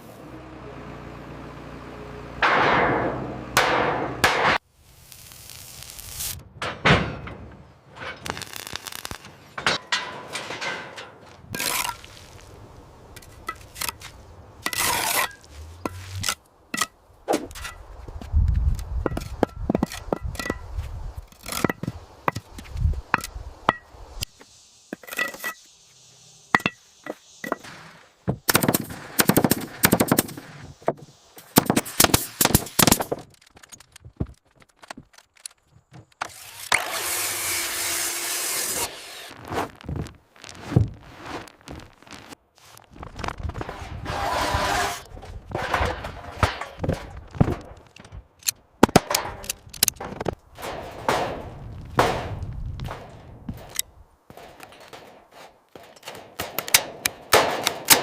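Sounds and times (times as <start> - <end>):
scraping and rubbing: 11.5 - 12.6, 13.2 - 23.4, 24.9 - 25.7, 39.1 - 48.4.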